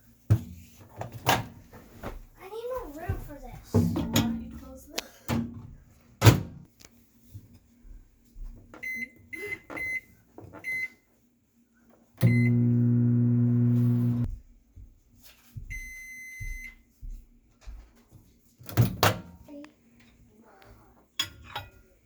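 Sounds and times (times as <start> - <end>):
microwave keypad beeps: 8.8 - 10.0, 10.6 - 11.0, 12.2 - 12.9, 15.7 - 16.8
microwave oven humming: 12.2 - 14.3
long end-of-cycle beep: 12.3 - 13.0.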